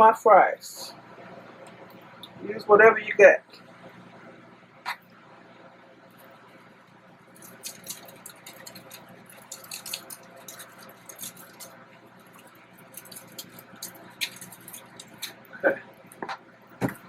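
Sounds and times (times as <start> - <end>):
seasoning shaker rattling onto fries: 7.3 - 15.5.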